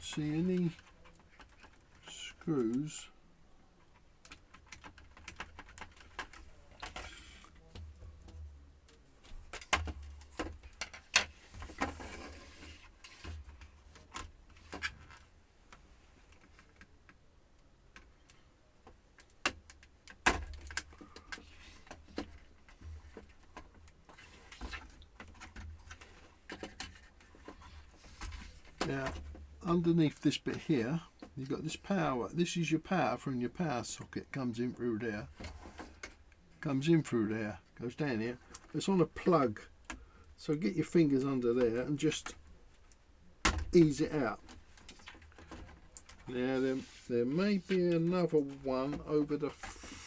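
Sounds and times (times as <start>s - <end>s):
small clicks and taps on plastic: 3.8s - 12.1s, 13.1s - 29.5s
scrapes and rustles: 3.8s - 16.9s, 20.9s - 29.8s, 35.3s - 36.6s, 43.8s - 50.0s.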